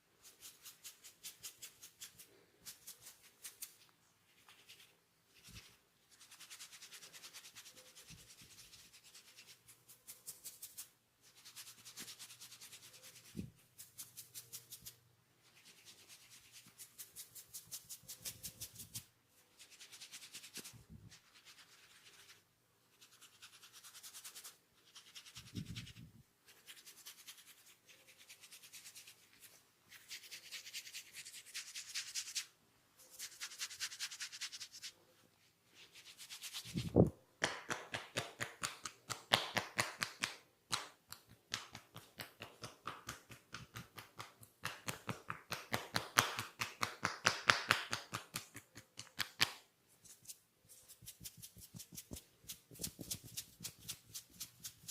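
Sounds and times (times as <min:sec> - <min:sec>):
hands rubbing through hair: 0:00.2 - 0:35.0, 0:35.7 - 0:54.9
crisp tapping strokes: 0:47.9 - 0:54.9.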